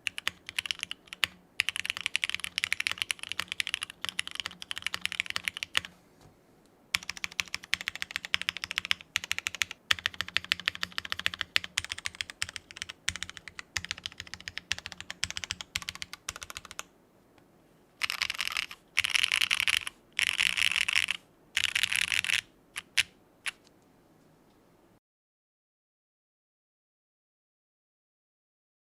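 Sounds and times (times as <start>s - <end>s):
mechanical keyboard typing: 0.0s - 5.9s, 6.9s - 16.9s, 18.0s - 23.7s.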